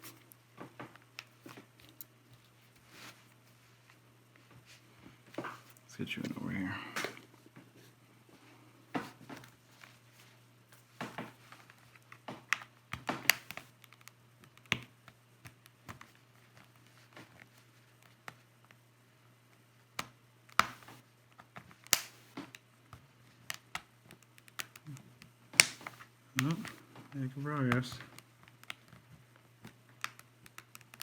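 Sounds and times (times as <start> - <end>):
plastic clicks and snaps: 21.8 - 22.7, 23.4 - 26.8, 29.6 - 31.0.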